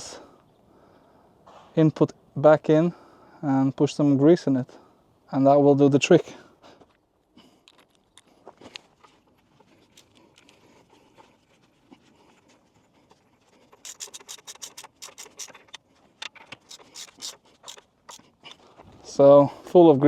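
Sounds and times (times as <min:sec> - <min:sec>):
scraping and rubbing on metal: 0:08.9 - 0:18.7
scratchy strokes: 0:09.0 - 0:15.8, 0:16.6 - 0:18.6.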